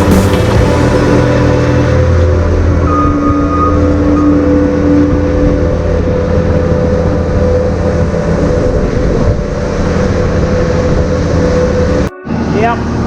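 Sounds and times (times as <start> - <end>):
skid steer engine running: 0.0 - 13.0
steady high tone: 0.0 - 13.0.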